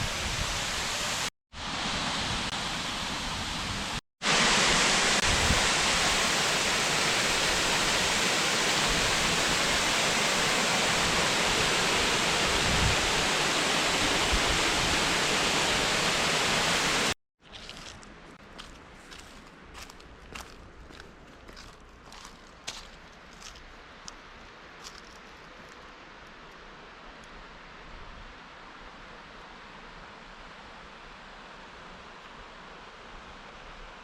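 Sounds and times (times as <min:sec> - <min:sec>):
waterfall roaring: 0:00.0 - 0:17.2.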